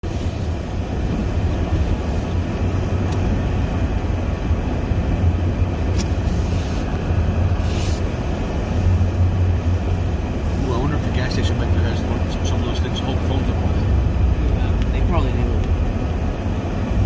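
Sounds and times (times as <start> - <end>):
vehicle driving rumble: 0.0 - 17.0
short hiss: 7.6 - 8.2.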